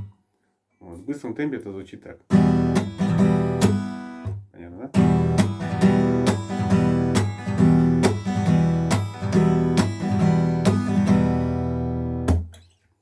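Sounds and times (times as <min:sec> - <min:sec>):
acoustic guitar strumming: 0:02.3 - 0:12.7.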